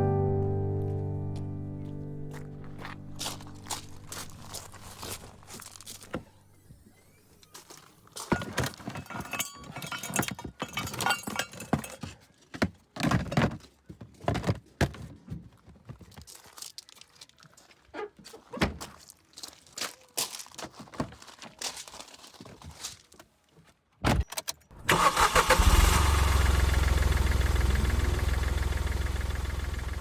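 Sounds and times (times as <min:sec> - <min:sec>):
light metallic clinks: 0:09.0 - 0:12.1.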